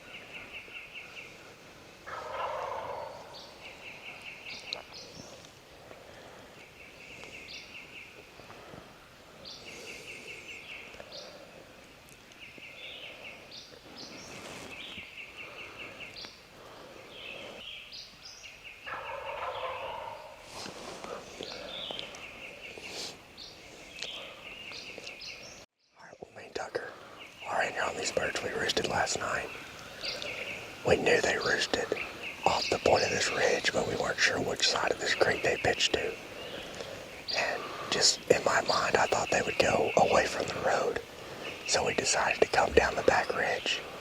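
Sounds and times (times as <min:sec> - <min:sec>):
birds trilling: 0:00.0 - 0:44.0
distant turkeys gobbling: 0:02.0 - 0:03.5, 0:18.9 - 0:20.5.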